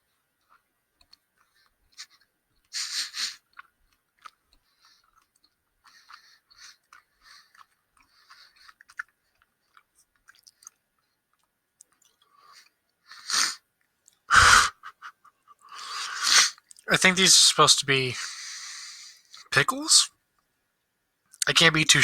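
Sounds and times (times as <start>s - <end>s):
person chewing gummy candy: 0.4s - 13.0s, 15.6s - 16.9s.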